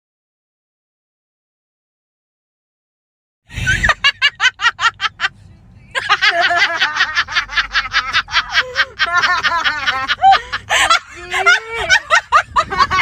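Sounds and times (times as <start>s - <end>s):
person laughing: 3.5s - 5.3s, 5.9s - 13.0s.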